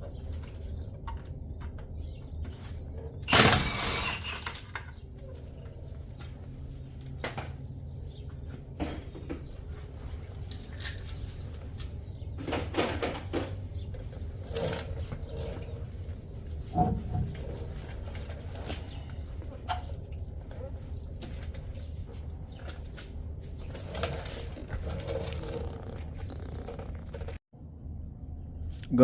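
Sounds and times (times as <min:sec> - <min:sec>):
metal tools clattering: 0:02.6 - 0:05.7
low steady hum: 0:27.6 - 0:29.0.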